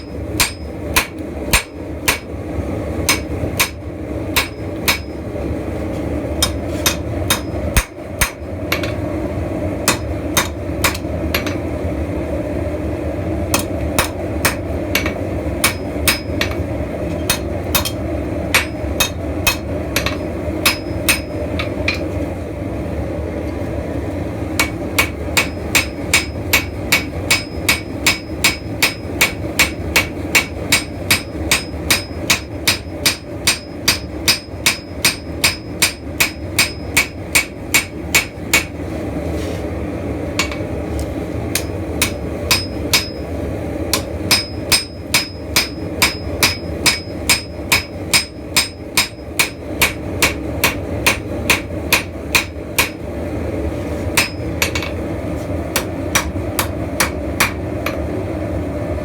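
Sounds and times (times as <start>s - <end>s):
hammer striking steel on anvil: 0.0s - 2.4s, 3.1s - 3.8s, 4.4s - 5.3s, 6.4s - 9.0s, 9.8s - 11.7s, 13.5s - 22.1s, 24.6s - 38.8s, 40.4s - 40.7s, 41.5s - 43.3s, 43.9s - 53.0s, 54.1s - 55.0s, 55.7s - 58.0s.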